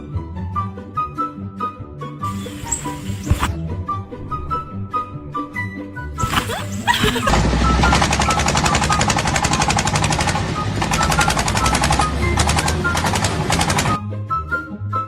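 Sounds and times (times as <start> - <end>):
rapid mechanical hammering: 7.2 - 14.0.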